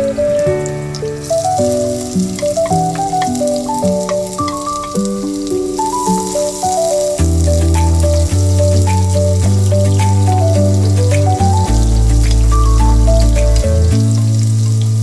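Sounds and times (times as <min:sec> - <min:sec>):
food sizzling in a pan: 0:01.0 - 0:11.2
instrumental music with bass: 0:07.2 - 0:15.0.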